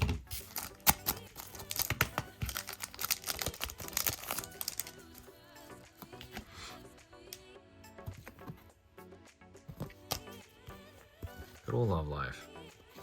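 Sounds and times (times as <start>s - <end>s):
wrapper being torn and crinkled: 0.3s - 5.2s.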